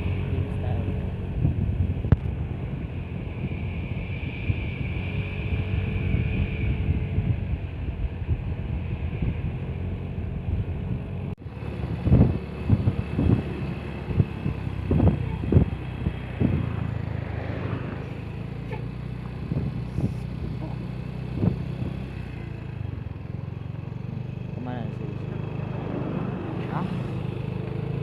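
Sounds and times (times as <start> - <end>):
wind buffeting microphone: 0.0 - 24.4
vehicle engine humming: 0.0 - 28.0.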